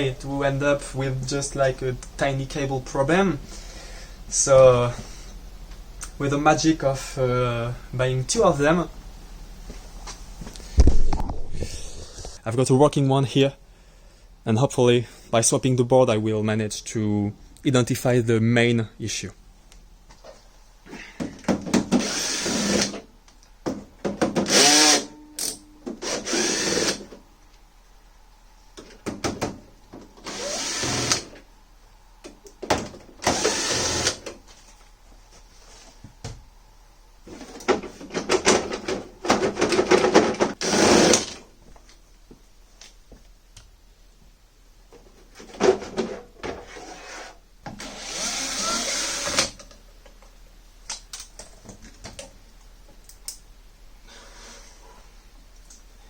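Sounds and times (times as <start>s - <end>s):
electric screwdriver bursts: 22.0s - 22.9s, 24.5s - 25.1s, 26.0s - 27.0s, 30.2s - 31.3s, 33.2s - 34.2s, 40.6s - 41.3s, 47.8s - 49.6s.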